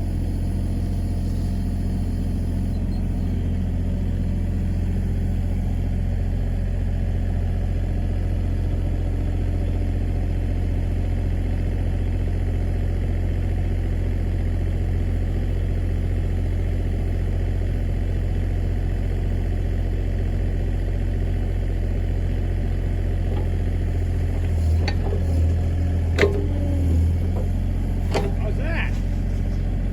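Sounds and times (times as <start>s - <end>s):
diesel engine droning: 0.0s - 7.4s, 20.7s - 29.9s.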